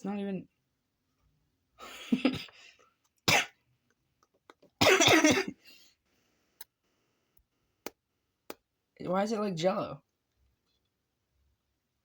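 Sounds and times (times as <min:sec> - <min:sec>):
person coughing: 0:03.3 - 0:03.6, 0:04.8 - 0:05.6.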